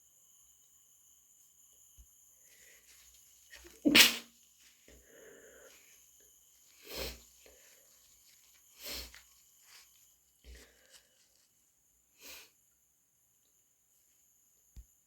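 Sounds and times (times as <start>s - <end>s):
person sniffing through the nose: 3.5s - 4.3s, 6.7s - 11.4s, 12.2s - 12.6s
person sneezing: 3.6s - 4.3s.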